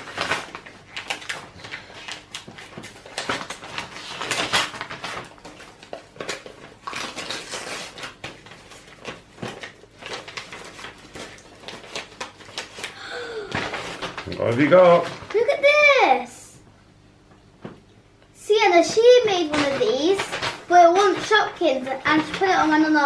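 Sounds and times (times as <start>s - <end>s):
packaging rustling and crinkling: 0.0s - 16.3s, 18.7s - 23.0s
small clicks and clatters: 18.8s - 22.9s.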